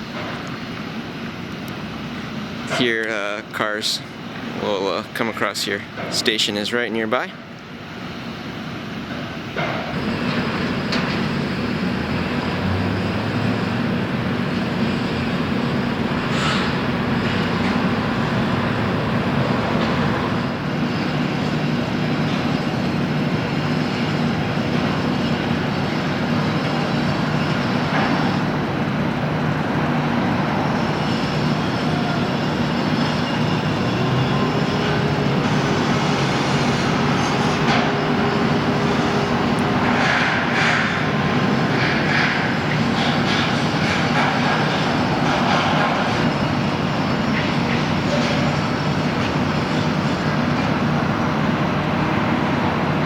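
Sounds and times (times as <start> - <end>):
traffic hum: 10.0 - 23.6.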